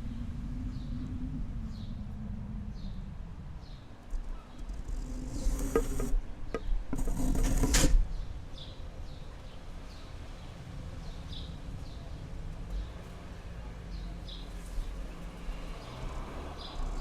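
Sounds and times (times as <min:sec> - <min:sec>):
low background rumble: 0:00.0 - 0:09.2.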